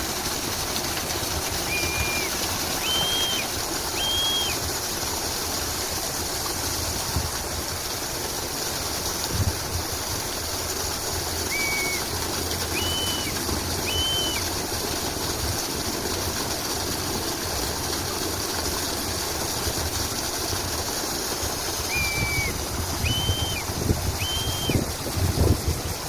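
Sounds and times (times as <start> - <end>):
running water rushing: 0.0 - 26.0
bird whistling short notes: 1.7 - 4.6, 11.5 - 12.1, 12.7 - 14.4, 21.9 - 23.6, 24.2 - 24.8
wind gusts on microphone: 22.2 - 26.0.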